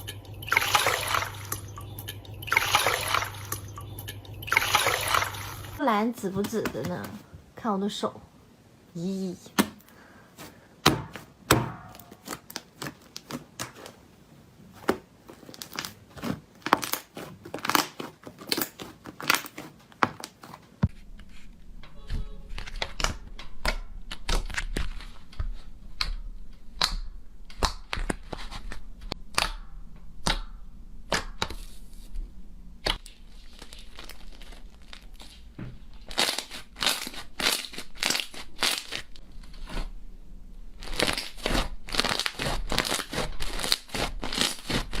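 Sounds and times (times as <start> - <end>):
low hum: 0.0 - 5.8, 20.8 - 27.5
slime crackling and popping: 36.0 - 39.2.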